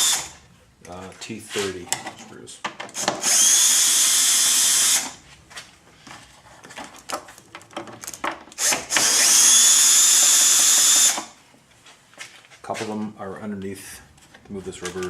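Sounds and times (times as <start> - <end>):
power driver whine: 0.0 - 0.4, 2.9 - 5.2, 8.5 - 11.4
clicks and knocks of screws: 6.7 - 9.1.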